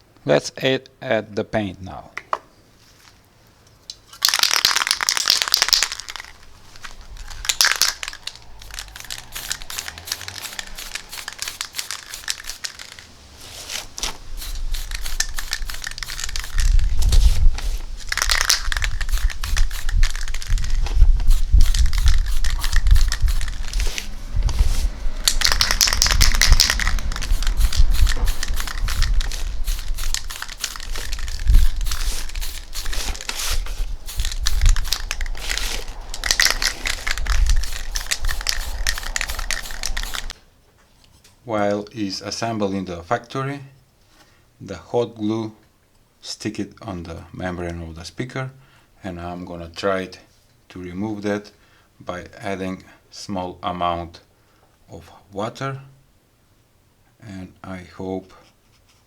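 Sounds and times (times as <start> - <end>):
spray can ball rattling: 4.0 - 40.4
spray hiss: 5.5 - 40.4
low rumble: 6.2 - 13.4, 14.2 - 40.4.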